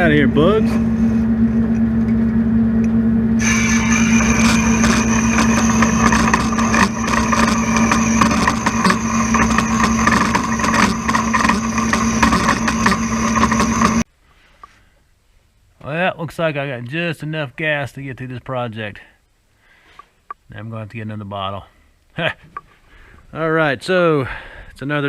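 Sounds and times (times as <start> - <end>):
machine hum: 0.0 - 14.1
sharp clicks: 3.4 - 14.0
steel cutting crackling hiss: 3.4 - 14.0.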